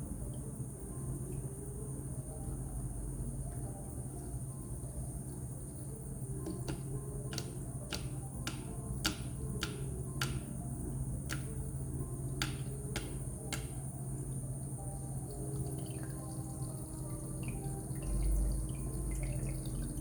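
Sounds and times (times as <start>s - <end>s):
humidifier low hum: 0.0s - 20.0s
water drops ticking into basin: 6.4s - 10.6s, 11.2s - 11.7s, 12.3s - 13.9s, 15.0s - 20.0s.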